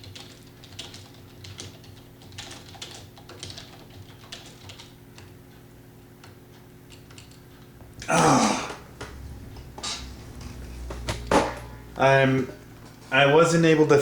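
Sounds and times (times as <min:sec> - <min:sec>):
sighing exhale with groan: 0:08.0 - 0:08.9.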